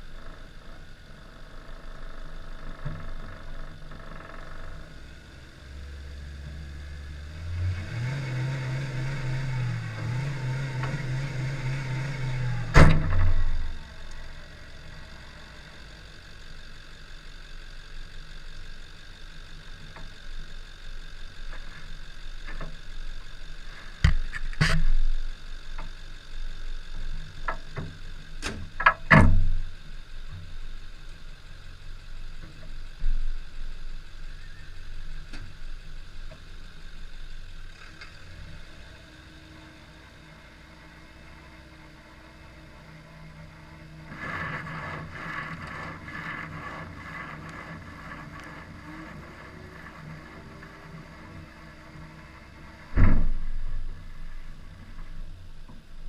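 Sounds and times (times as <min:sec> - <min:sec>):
car engine hum: 0:00.0 - 0:56.0.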